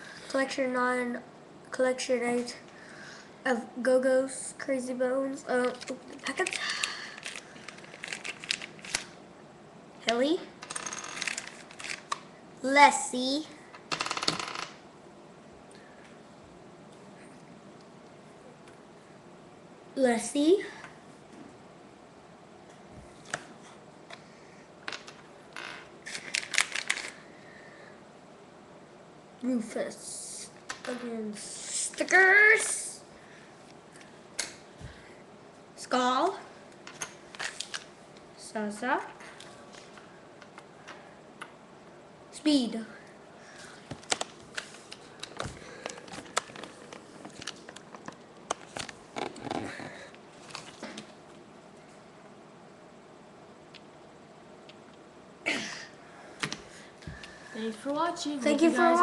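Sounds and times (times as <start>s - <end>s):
plastic figures clicking together: 5.6s - 9.1s
packet rustling: 6.3s - 9.1s.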